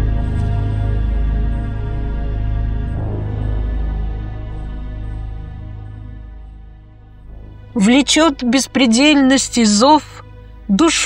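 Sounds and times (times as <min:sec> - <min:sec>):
deep low drone: 0:00.0 - 0:09.0
ambient synth chords: 0:00.0 - 0:10.7.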